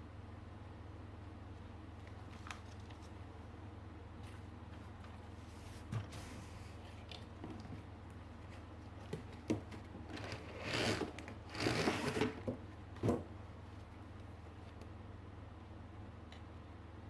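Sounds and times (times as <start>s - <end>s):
steady low hum: 0.0s - 11.6s.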